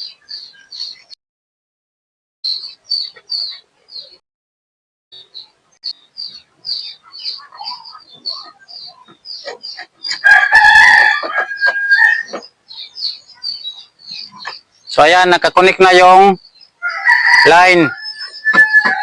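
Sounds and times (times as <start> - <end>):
rooster crowing: 10.2 - 12.4, 16.8 - 19.0.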